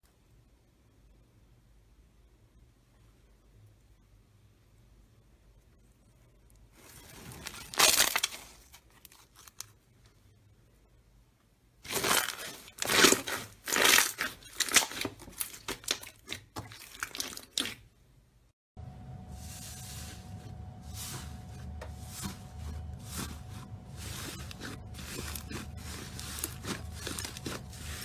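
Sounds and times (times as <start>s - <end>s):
slime squelching and popping: 11.9s - 17.8s, 23.1s - 28.0s.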